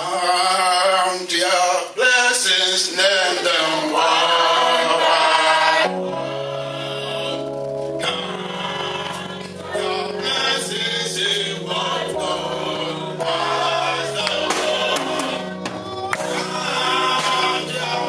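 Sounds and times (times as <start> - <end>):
choir singing gospel: 0.0 - 18.0
sustained instrumental chords: 3.9 - 18.0
sharp percussive hits: 14.3 - 16.5.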